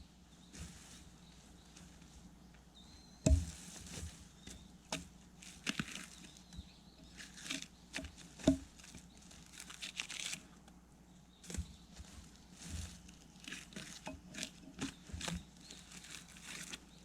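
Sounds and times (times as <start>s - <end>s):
axe knocking into log: 3.3s - 3.5s
bark scraping and tearing: 5.3s - 10.6s, 11.4s - 17.0s.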